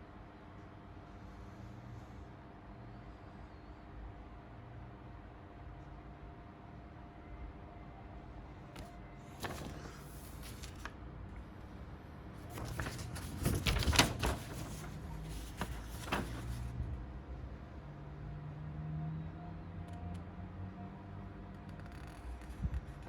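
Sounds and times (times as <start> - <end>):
packaging rustling and clicking: 12.5 - 16.7.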